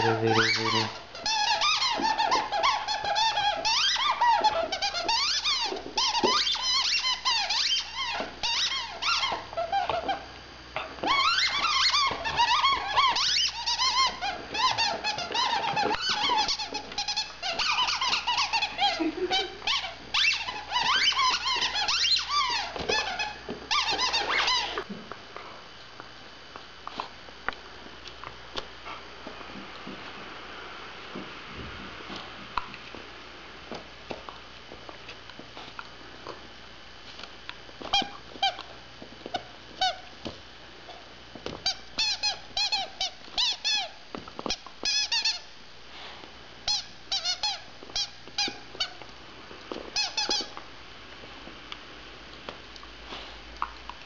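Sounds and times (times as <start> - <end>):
squeaky dog toy squeaking: 0.0 - 10.2, 11.0 - 24.8, 41.6 - 44.0, 44.8 - 45.5, 46.7 - 49.0, 50.0 - 50.6.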